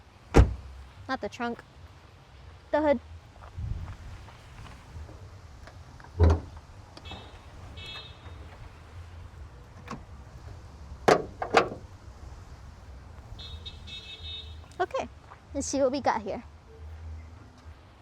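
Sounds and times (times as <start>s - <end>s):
car hood heavy thump: 0.4s - 0.6s, 6.2s - 6.5s, 11.1s - 11.8s
hood latch clunks: 0.4s - 0.6s, 6.0s - 8.7s, 9.7s - 10.2s, 11.0s - 11.9s.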